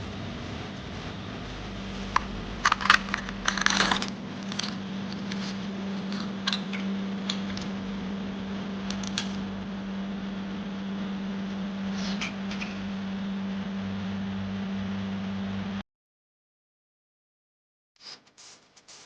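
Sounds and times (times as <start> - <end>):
steady low hum: 0.0 - 15.8
hard parts clicking and clattering: 2.6 - 5.4.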